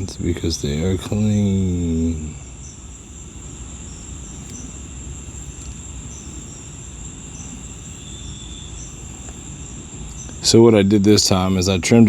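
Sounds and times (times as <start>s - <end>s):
crickets chirring: 0.0s - 12.0s
short insect chirps: 0.0s - 12.0s.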